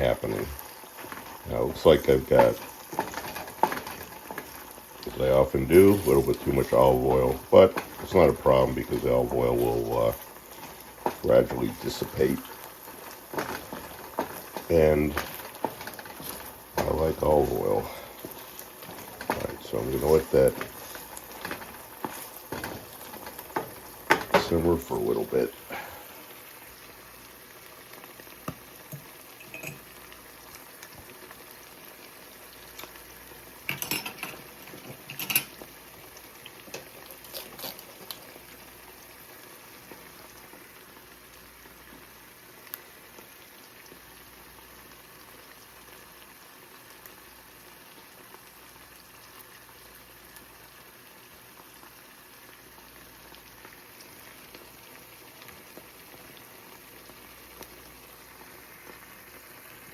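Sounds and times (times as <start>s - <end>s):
food sizzling in a frying pan: 0.0s - 59.9s
clinks and knocks: 29.4s - 29.8s.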